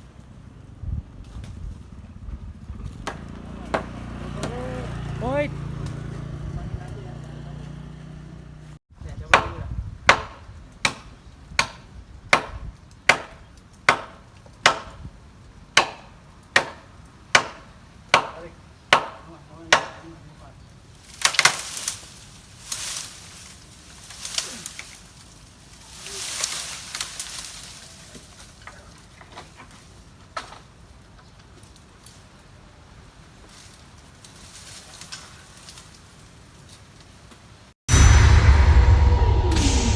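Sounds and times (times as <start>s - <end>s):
blade chopping wood: 3.0s - 5.0s, 9.2s - 15.1s, 15.8s - 20.1s, 21.2s - 21.9s
rustling and crackling: 20.6s - 37.7s.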